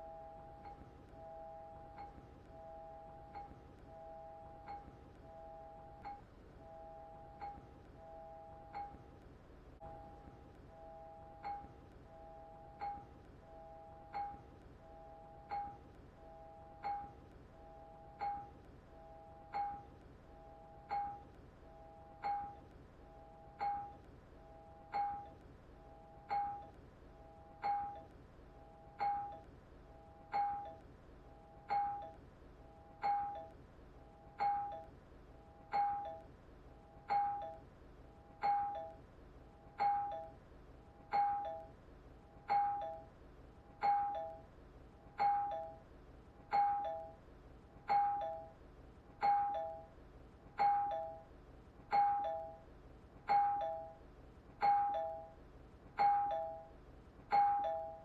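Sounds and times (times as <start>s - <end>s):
doorbell ringing: 57.3s - 58.0s.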